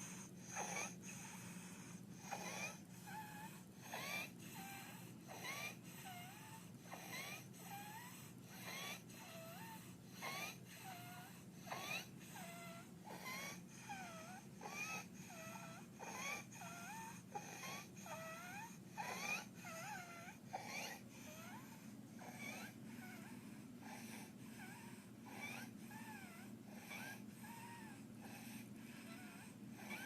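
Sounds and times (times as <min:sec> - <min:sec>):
infant squeaky crowing breaths: 0:00.0 - 0:30.0.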